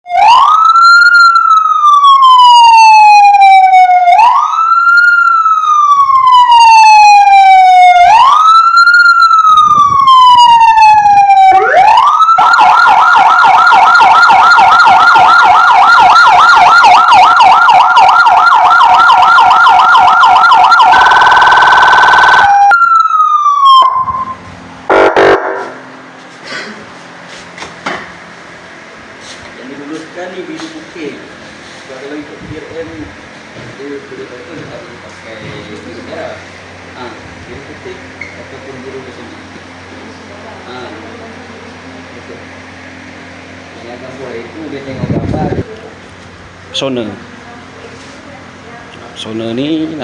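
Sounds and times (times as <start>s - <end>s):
electronic police siren: 0.0s - 25.9s.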